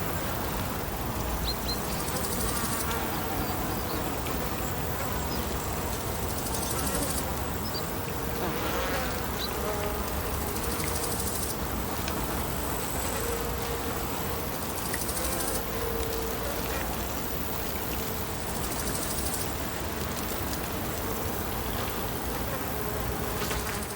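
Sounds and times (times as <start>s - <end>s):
insects buzzing: 0.0s - 23.9s
water and wind: 9.0s - 23.9s
faint ticks: 14.6s - 22.6s.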